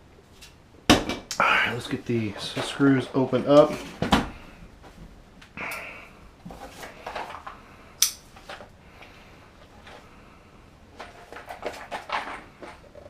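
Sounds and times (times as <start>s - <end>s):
sharp snap: 8.0s - 8.2s.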